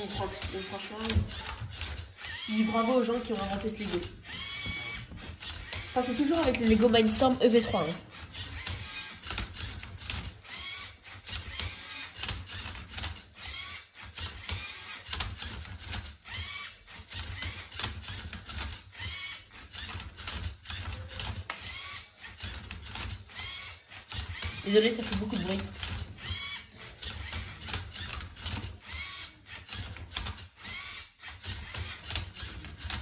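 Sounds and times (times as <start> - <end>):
robot motors whining: 0.0 - 33.0.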